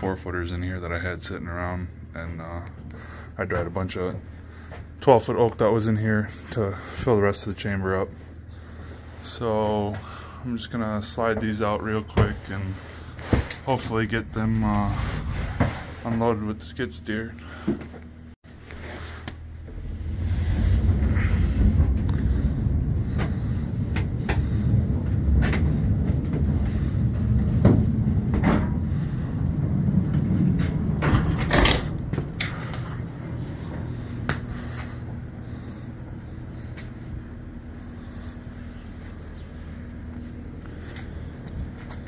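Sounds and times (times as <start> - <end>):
skid steer engine rumbling: 19.5 - 42.0.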